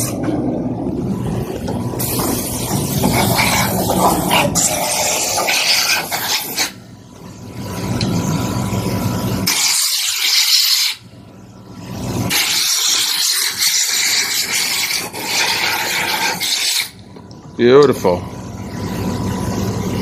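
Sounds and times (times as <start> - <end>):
low machine hum: 0.0 - 9.5, 11.0 - 12.4, 16.9 - 20.0.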